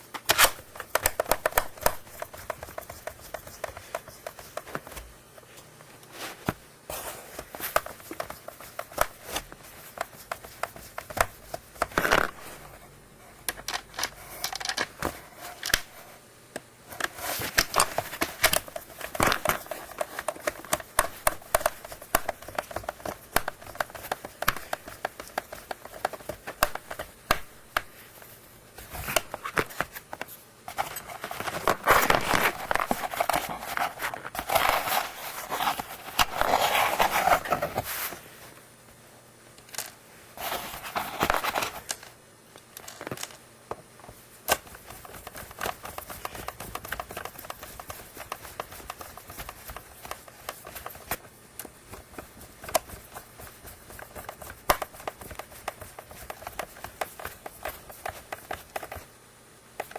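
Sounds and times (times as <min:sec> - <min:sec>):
plastic parts clicking: 0:13.4 - 0:15.9
scraping and rustling: 0:27.9 - 0:38.6, 0:39.8 - 0:42.1.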